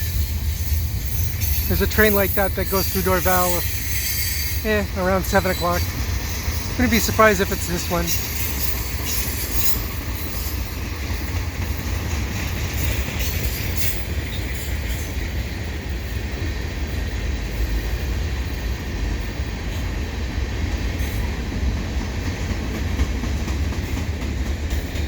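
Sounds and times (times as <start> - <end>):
steel wheels rumbling on rails: 0.0 - 25.0.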